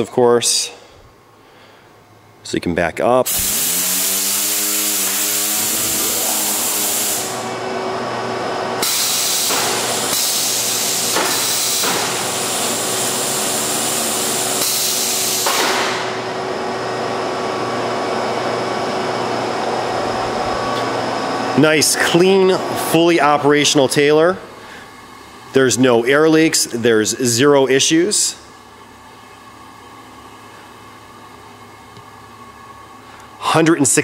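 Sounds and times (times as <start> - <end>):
compressed air hissing: 3.3 - 7.6, 8.8 - 16.2.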